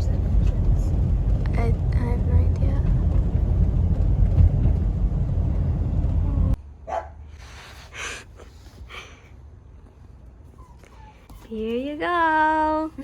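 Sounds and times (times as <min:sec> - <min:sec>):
car road noise rumble: 0:00.0 - 0:07.6.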